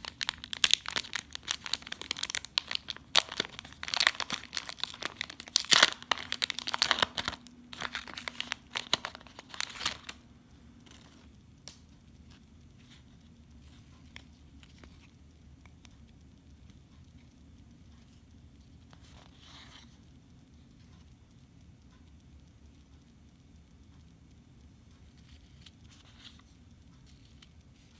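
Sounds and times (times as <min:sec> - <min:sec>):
plastic wrapping tearing and crinkling: 0:00.0 - 0:10.2.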